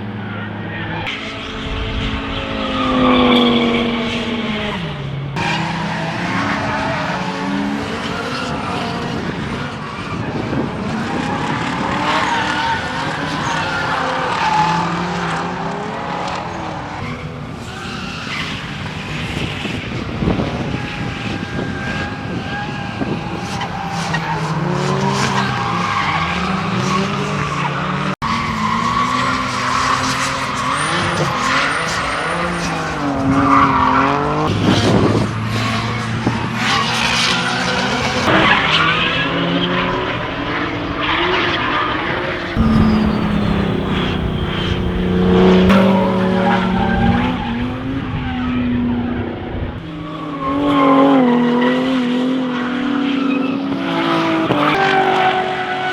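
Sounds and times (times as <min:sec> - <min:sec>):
race car engines revving: 0:00.0 - 0:55.9
tyre noise with skidding: 0:28.2 - 0:48.3.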